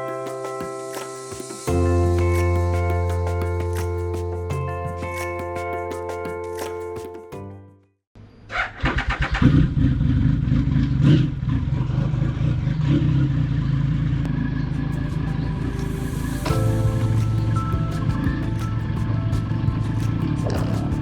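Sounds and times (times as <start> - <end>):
music intro: 0.0 - 7.9, 14.4 - 21.0
motorcycle engine revving and idling: 8.9 - 15.2.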